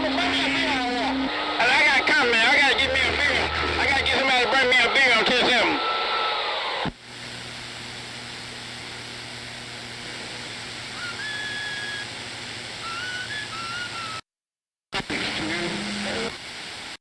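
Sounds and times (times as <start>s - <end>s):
faint hum: 0.0s - 6.1s, 7.0s - 14.2s
radio static hiss: 0.0s - 14.2s, 15.0s - 17.0s
short whistling tones: 11.0s - 12.2s, 12.8s - 14.2s.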